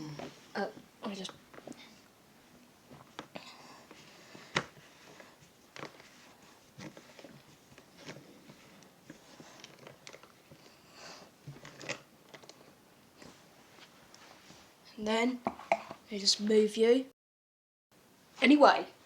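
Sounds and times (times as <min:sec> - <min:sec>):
vacuum cleaner parts handled: 0:11.5 - 0:12.7.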